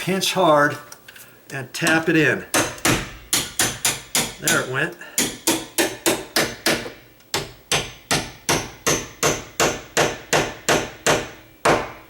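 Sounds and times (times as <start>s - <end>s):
hammer tapping metal hinge pin: 1.8s - 11.3s.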